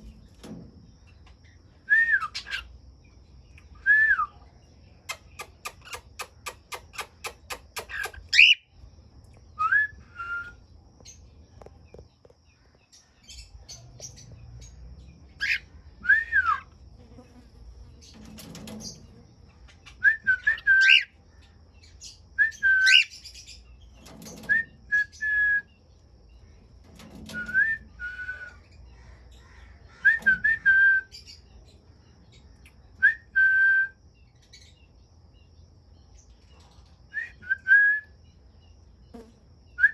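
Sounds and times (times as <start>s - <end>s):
bird clicking chatter: 5.1s - 8.5s
cockatiels whistling calls: 7.9s - 8.6s, 20.2s - 21.1s, 22.7s - 23.1s.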